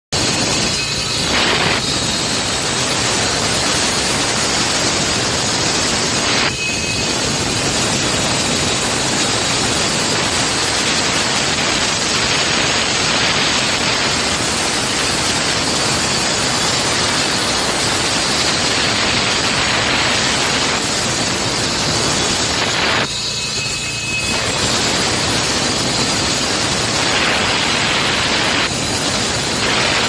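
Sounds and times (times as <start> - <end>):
machine engine: 0.2 - 30.0
saw blade grinding concrete: 0.2 - 30.0.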